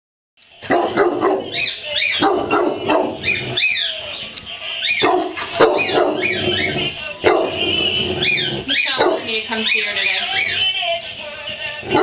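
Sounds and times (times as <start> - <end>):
dog barking: 0.6 - 3.4, 5.0 - 6.4, 7.2 - 7.7, 8.3 - 9.4.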